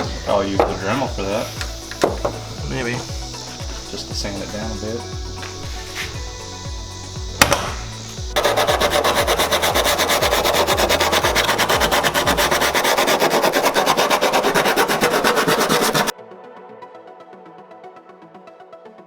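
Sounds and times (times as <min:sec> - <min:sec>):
rasping sanding of an edge: 0:00.0 - 0:06.7, 0:07.9 - 0:16.1
electronic music with kick drum: 0:00.0 - 0:13.0.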